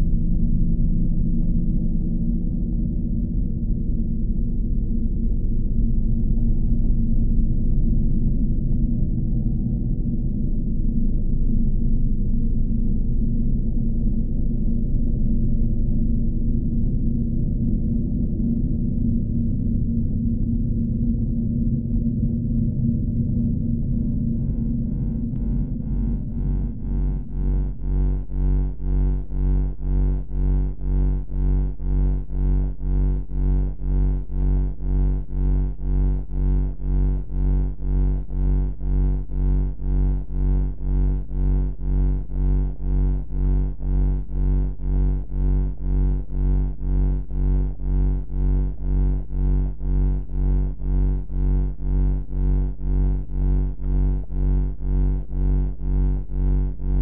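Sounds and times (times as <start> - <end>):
low throbbing drone: 0.0 - 57.0.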